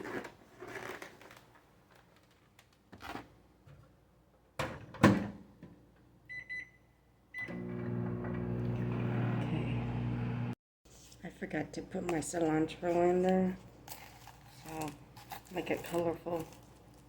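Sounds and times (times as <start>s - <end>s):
microwave oven humming: 7.4s - 10.6s.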